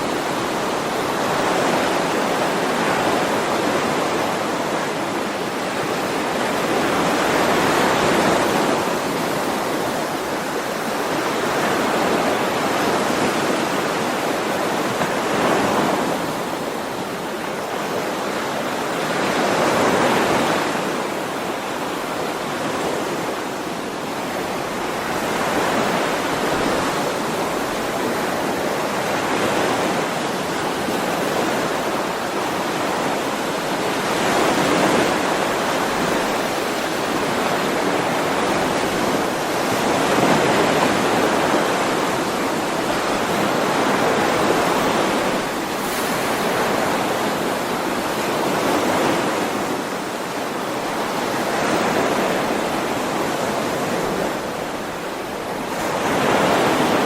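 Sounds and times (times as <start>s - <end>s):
ocean waves breaking on shore: 0.0s - 57.0s.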